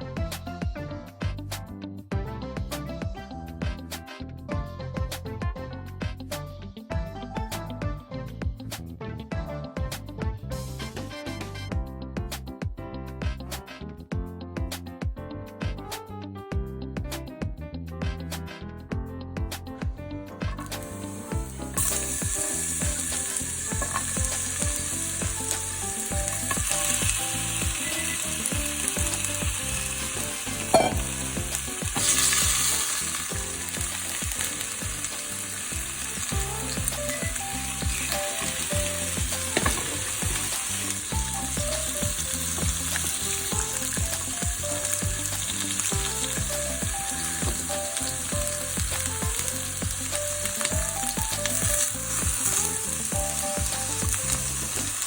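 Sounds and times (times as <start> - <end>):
food sizzling in a frying pan: 20.5 - 55.0
utensil knocking against pan: 30.7 - 31.2, 39.5 - 40.4.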